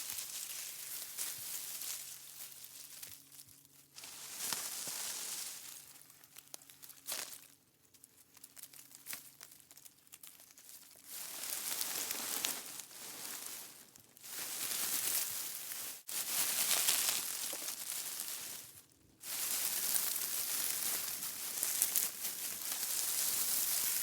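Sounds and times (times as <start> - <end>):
dry leaves and twigs crunching: 0.0 - 24.0.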